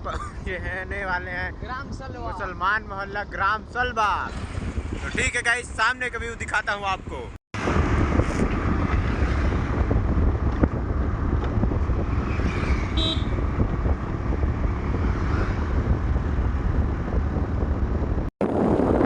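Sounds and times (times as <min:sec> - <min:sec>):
wind noise on microphone: 0:00.0 - 0:19.0
vehicle driving rumble: 0:07.6 - 0:19.0
short horn toot: 0:12.9 - 0:13.4.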